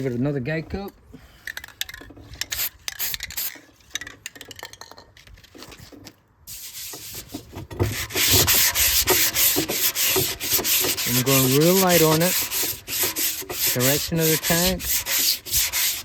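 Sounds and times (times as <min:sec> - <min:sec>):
handling clicks and scrapes: 0:00.0 - 0:16.0
sanding block rubbing on filler: 0:06.5 - 0:16.0.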